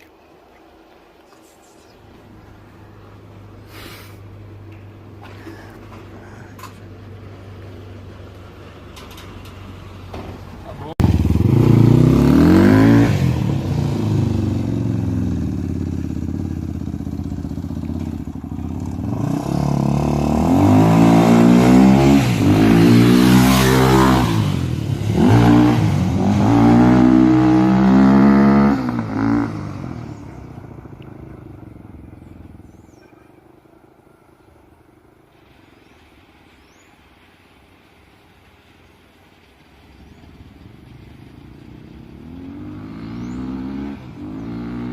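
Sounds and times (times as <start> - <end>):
dirt bike engine revving: 10.9 - 30.6, 41.7 - 44.9.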